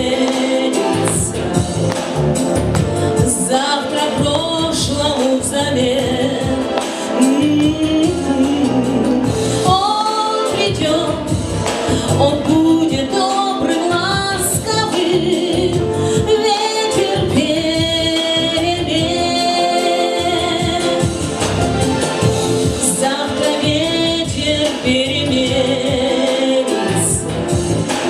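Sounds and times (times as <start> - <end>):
backing track music: 0.0 - 28.0
woman singing slow melody: 3.0 - 21.1, 22.8 - 27.4.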